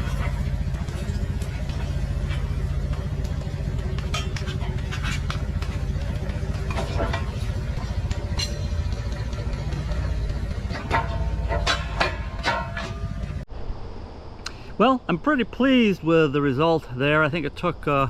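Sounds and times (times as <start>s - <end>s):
sharp knocks and clanks: 0.0s - 13.5s
small excavator engine running: 0.0s - 13.5s.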